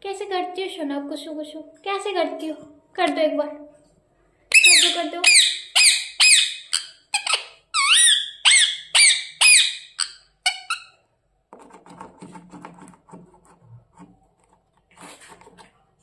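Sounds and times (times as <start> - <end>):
parrot squeaky calls: 4.5 - 11.0.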